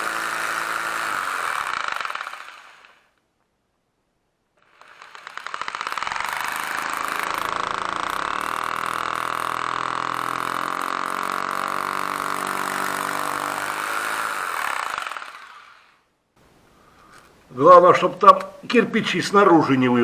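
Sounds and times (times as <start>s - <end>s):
electric drill boring into brick: 0.0s - 3.2s, 4.6s - 16.1s.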